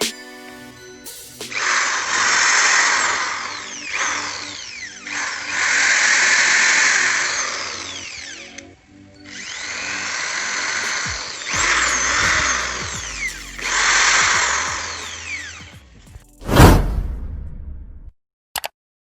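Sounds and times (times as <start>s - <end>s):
background music: 0.0s - 17.0s
electric impact drill running: 1.5s - 15.8s.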